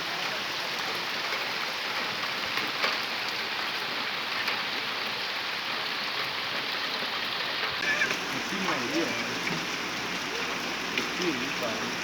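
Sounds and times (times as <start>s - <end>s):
rain pattering: 0.0s - 12.0s
faint drip ticks: 8.1s - 12.0s.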